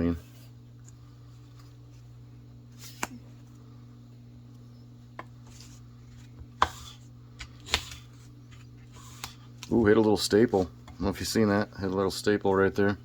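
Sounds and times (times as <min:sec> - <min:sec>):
knife cutting strokes: 0:05.4 - 0:09.7.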